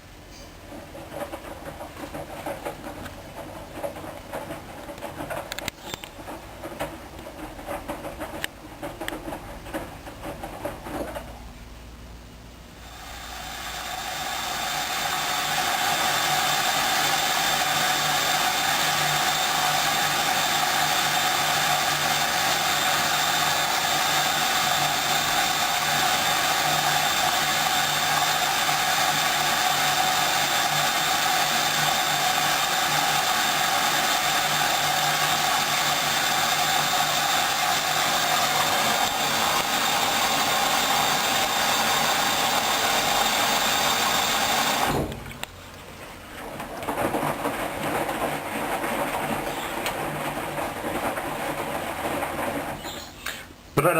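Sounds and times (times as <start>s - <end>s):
washing machine whirring: 0.0s - 53.7s.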